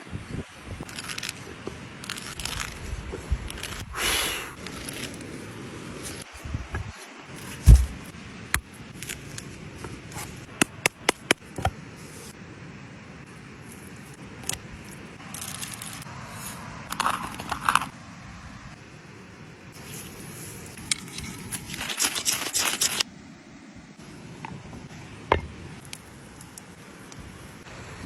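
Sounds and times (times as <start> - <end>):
dull thump: 7.6 - 8.0
utensils scraping and rustling: 15.2 - 17.9, 20.7 - 23.0.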